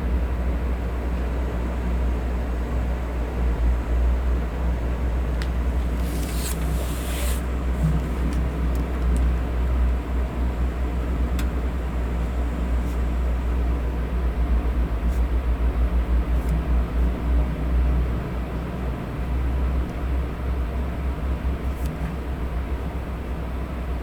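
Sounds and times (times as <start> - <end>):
electric fan running: 0.0 - 24.0.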